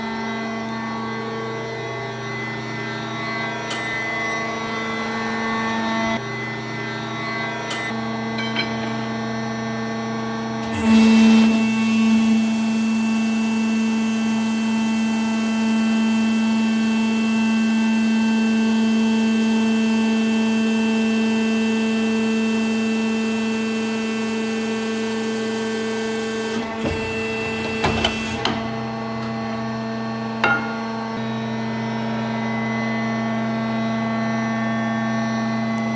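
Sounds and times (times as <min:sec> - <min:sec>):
pipe bending machine droning: 0:02.5 - 0:34.4
short knocks and clicks: 0:26.6 - 0:29.6.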